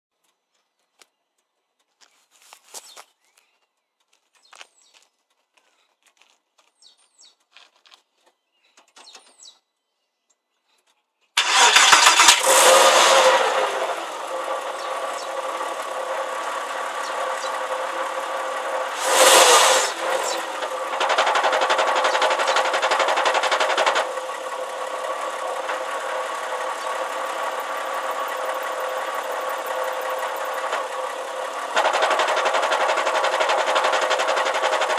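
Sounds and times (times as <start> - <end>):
car engine starting and idling: 11.4 - 34.9.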